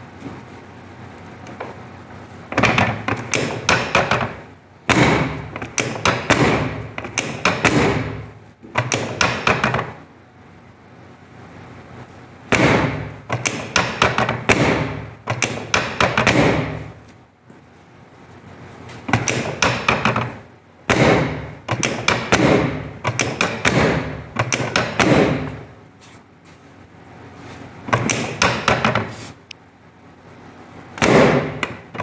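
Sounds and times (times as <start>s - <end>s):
table sections snapping down: 2.5s - 10.0s, 12.5s - 16.8s, 19.1s - 25.6s, 27.9s - 29.3s.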